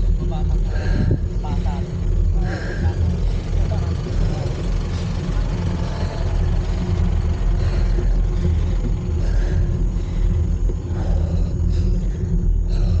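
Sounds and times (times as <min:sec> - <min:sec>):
traffic road noise: 0:00.0 - 0:13.0
wind buffeting microphone: 0:00.0 - 0:13.0.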